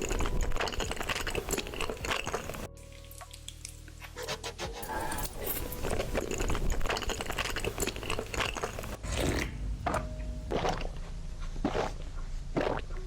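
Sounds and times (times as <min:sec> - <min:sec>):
crunchy food chewing: 0:00.0 - 0:03.8, 0:05.6 - 0:13.0.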